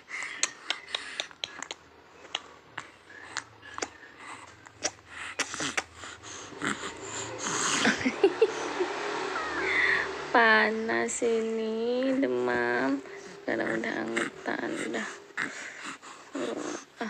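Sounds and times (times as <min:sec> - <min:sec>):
baby snuffling and snorting: 0:02.8 - 0:08.0, 0:12.4 - 0:17.0.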